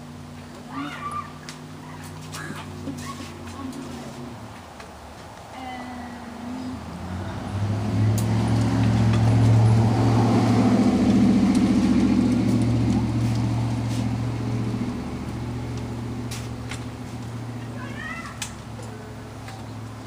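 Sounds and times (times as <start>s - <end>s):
vehicle engine running: 6.6s - 20.0s.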